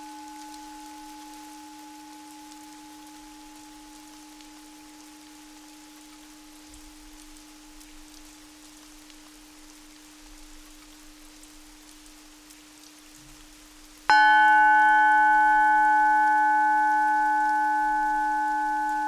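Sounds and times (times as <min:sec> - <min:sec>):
singing bowl ringing: 0:00.0 - 0:06.6, 0:14.1 - 0:19.0
rain-like patter: 0:00.0 - 0:19.0.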